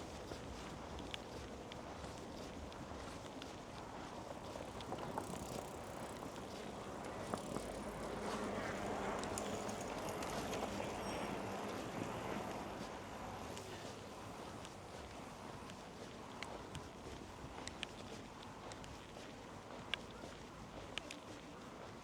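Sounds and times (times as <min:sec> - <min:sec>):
outdoor ambience: 0:00.0 - 0:22.0
vehicle passing slowly: 0:04.4 - 0:14.5.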